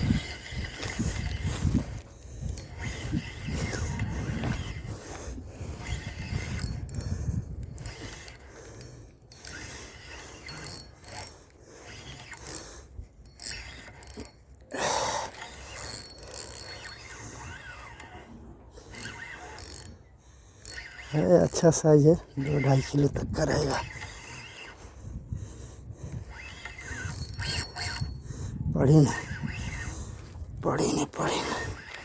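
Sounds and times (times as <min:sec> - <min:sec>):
fishing reel cranking: 0:00.0 - 0:32.0.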